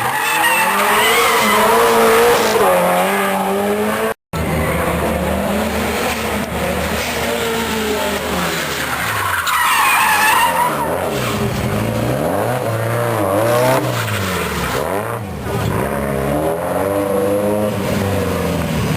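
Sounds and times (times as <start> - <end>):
tyres squealing: 7.1 - 11.4.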